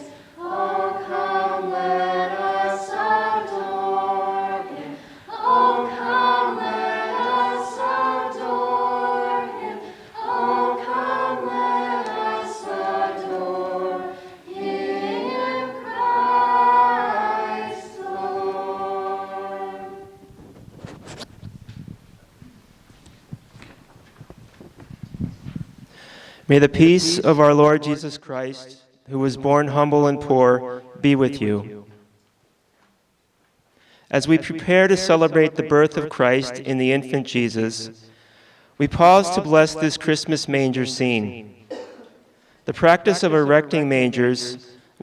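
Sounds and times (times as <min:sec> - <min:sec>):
a cappella group singing in harmony: 0:00.0 - 0:20.3, 0:38.8 - 0:40.1.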